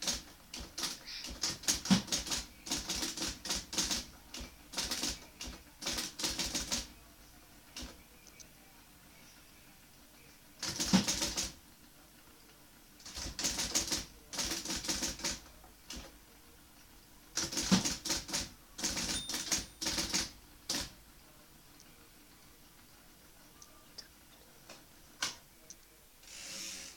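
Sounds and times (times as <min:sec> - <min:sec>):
electric typewriter typing: 0:00.0 - 0:06.9, 0:10.6 - 0:11.6, 0:13.0 - 0:16.1, 0:17.4 - 0:21.0.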